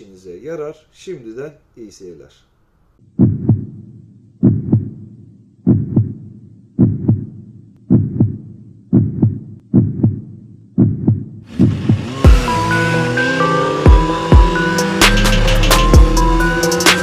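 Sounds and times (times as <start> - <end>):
heartbeat thumps: 3.2 - 11.4, 12.3 - 12.8, 13.9 - 17.0.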